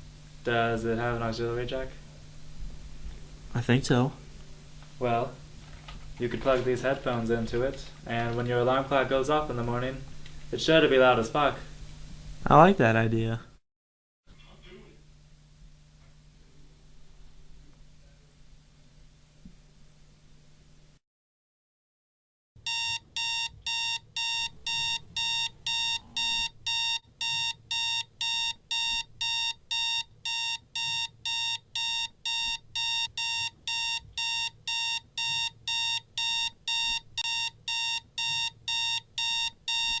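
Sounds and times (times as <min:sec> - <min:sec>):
alarm clock beeping: 0:22.6 - 0:40.0.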